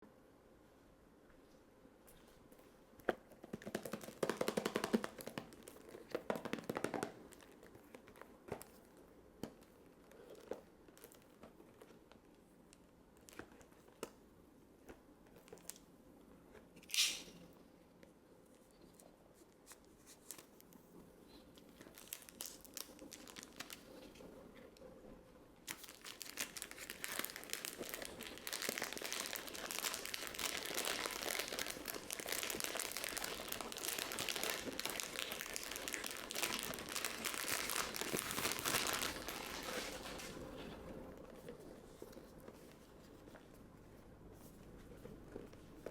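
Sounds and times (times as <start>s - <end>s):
wrapping crinkling and tearing: 21.5s - 24.8s, 25.6s - 43.6s.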